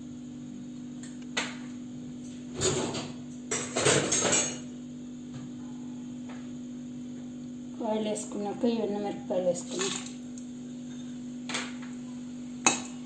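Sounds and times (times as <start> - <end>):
steady low hum: 0.0 - 13.0
utensils clattering against pan: 2.6 - 4.6.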